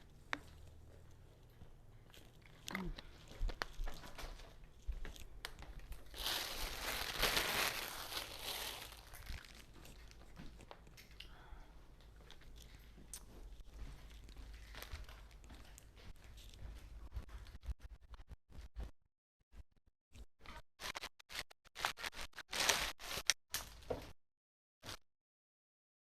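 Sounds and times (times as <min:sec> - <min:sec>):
plastic sheeting rustling: 0:06.1 - 0:09.6, 0:20.9 - 0:23.4.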